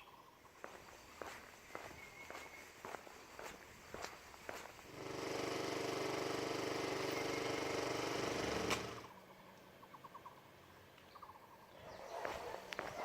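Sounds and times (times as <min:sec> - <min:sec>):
small motor rattling: 0:04.8 - 0:09.1.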